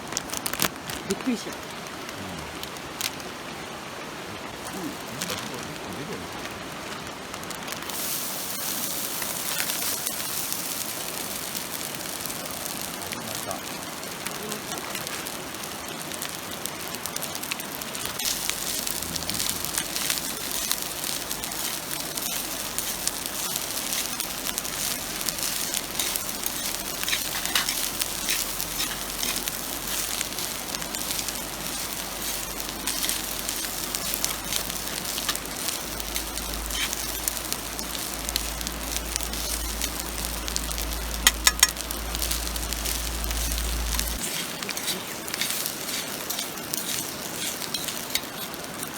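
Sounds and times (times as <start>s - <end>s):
food sizzling in a pan: 0.0s - 48.9s.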